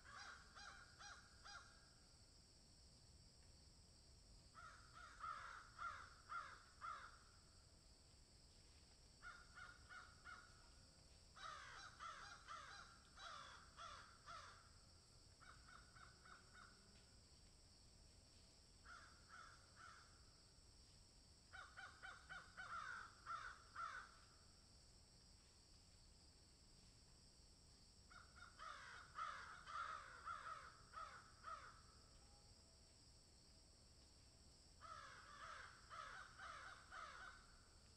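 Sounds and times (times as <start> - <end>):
crows cawing: 0.0 - 1.8, 4.6 - 7.3, 9.2 - 10.6, 11.4 - 14.7, 15.4 - 16.8, 18.8 - 20.2, 21.5 - 24.2, 28.1 - 31.8, 34.8 - 37.5.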